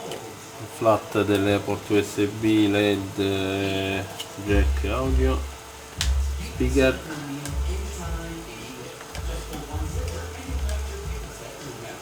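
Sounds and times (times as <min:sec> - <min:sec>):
background music with bass: 0:04.5 - 0:08.6, 0:09.2 - 0:11.7.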